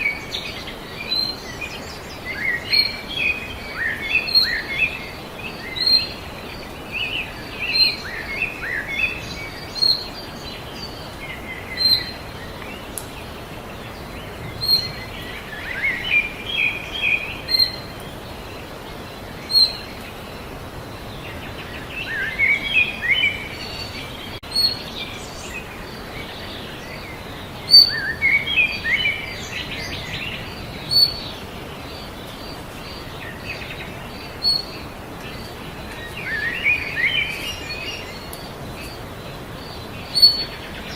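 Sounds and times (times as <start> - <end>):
songbirds warbling: 0.0 - 40.9
steady background noise: 0.0 - 40.9.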